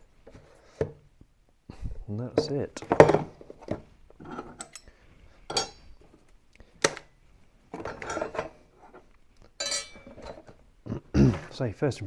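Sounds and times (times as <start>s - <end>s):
small hard parts clinking: 5.5s - 6.0s, 9.6s - 10.6s.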